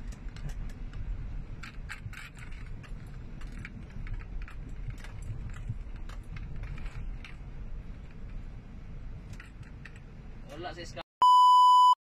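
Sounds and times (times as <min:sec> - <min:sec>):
rattling clicks: 0:00.0 - 0:08.4
engine and road rumble: 0:00.0 - 0:11.0.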